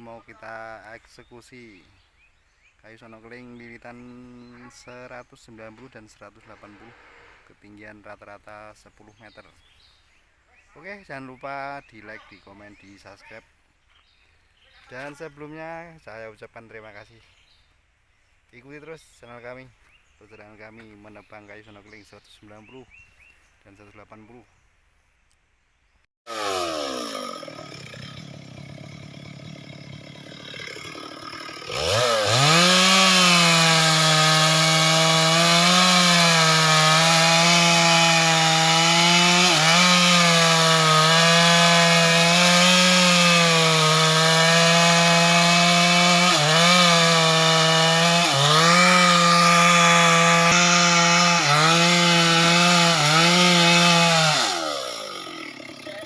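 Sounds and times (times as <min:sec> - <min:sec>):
chainsaw cutting wood: 0:26.3 - 0:56.0.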